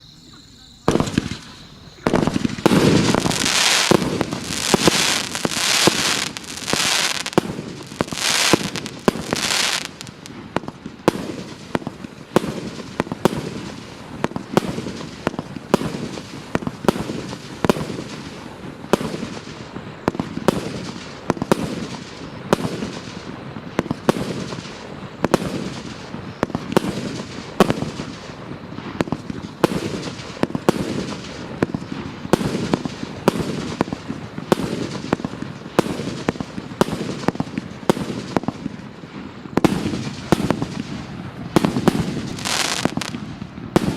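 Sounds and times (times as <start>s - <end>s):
hissing crackle of fireworks: 0.0s - 43.9s
firework mortar launches and bursts: 0.8s - 43.9s.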